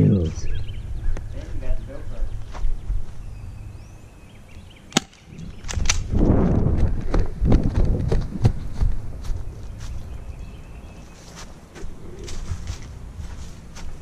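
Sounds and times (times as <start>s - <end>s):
airsoft pistol shots: 4.9s - 6.0s.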